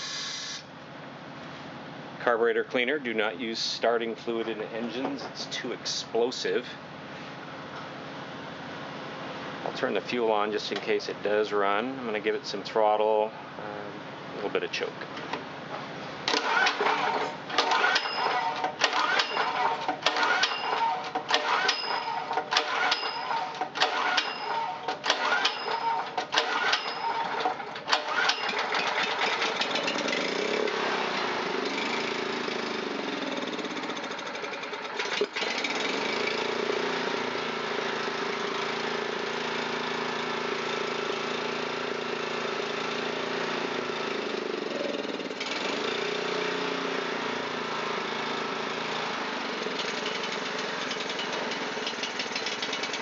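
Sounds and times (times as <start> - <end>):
small engine starting and running: 0.0 - 0.7, 16.2 - 53.0.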